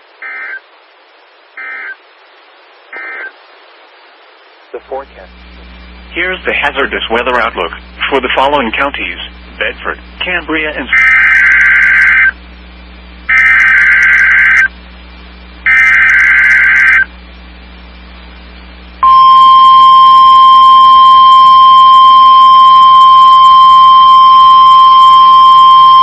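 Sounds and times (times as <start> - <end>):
harsh data bursts: 6.0 - 12.4, 13.3 - 14.7, 15.6 - 17.1
steady warning alarm tone: 10.9 - 12.3, 13.3 - 14.7, 15.6 - 17.1, 19.0 - 26.0.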